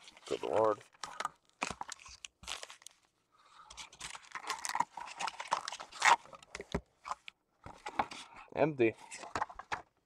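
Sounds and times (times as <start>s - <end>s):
card pack wrapper tearing: 3.8s - 6.3s.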